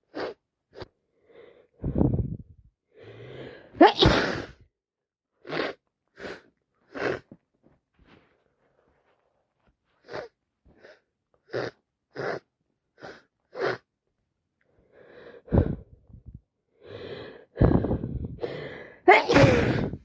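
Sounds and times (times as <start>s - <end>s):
person sniffing: 0.0s - 2.4s, 3.2s - 4.6s, 5.4s - 7.3s, 10.0s - 12.4s, 13.0s - 13.8s, 16.8s - 20.0s
person sneezing: 3.8s - 4.6s, 19.1s - 20.0s.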